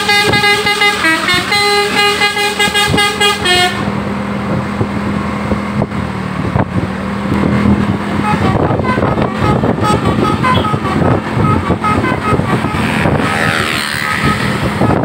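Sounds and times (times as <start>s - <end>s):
multi-tone bus horn melody: 0.0s - 4.0s, 8.1s - 15.0s
bus engine running: 0.0s - 15.0s
traffic noise: 0.0s - 15.0s.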